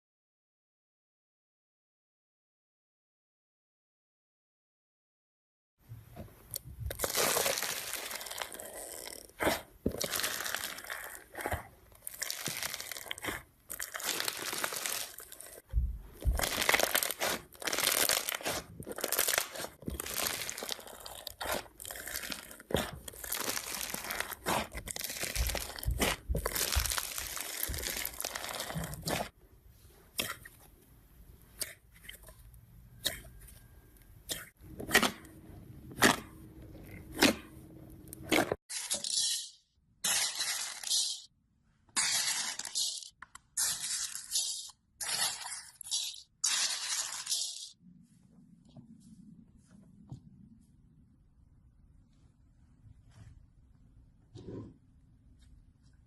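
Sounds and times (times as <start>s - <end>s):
slime crackling when squeezed: 6.9s - 8.7s, 9.4s - 15.4s, 16.2s - 29.3s.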